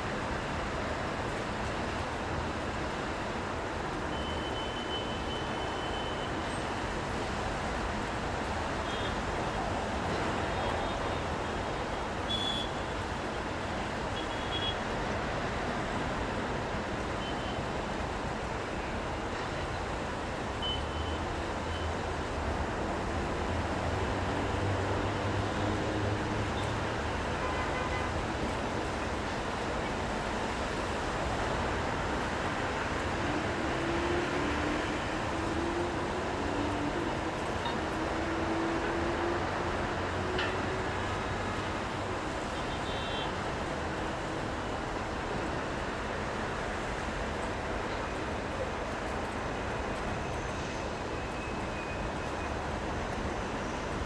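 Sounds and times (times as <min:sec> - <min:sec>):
rain: 0:00.0 - 0:54.0.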